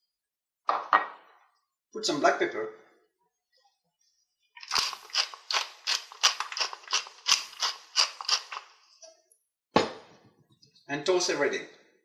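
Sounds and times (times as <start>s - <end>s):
pepper mill grinding: 4.6s - 8.8s.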